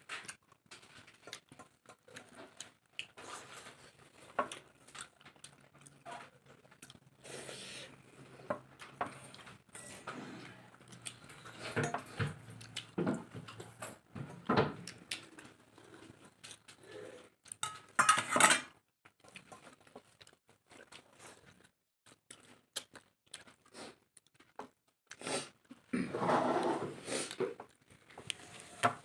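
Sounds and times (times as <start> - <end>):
chewing: 0.1 - 9.6, 10.4 - 13.7, 19.0 - 25.9
dishes and cutlery clinking: 17.6 - 18.7.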